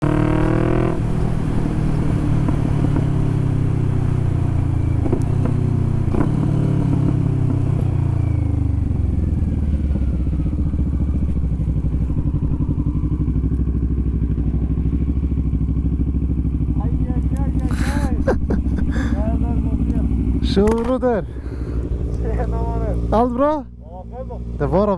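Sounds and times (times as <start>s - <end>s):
motorcycle engine idling: 0.0s - 24.9s.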